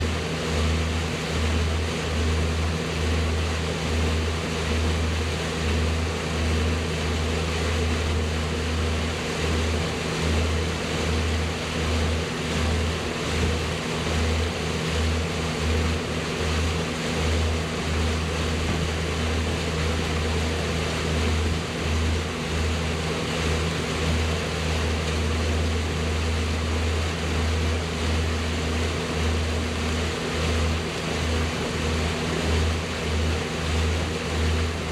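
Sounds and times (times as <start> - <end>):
boat motor running: 0.0 - 34.9
wind buffeting microphone: 16.8 - 22.5.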